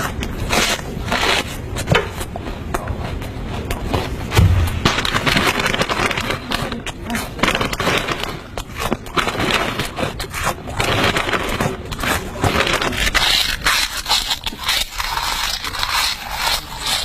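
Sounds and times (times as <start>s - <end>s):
person crunching and chewing food: 6.9s - 17.0s.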